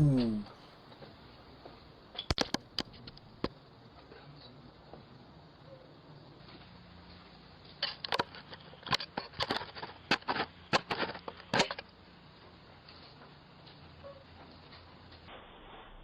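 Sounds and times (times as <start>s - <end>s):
low steady hum: 0.0s - 0.8s.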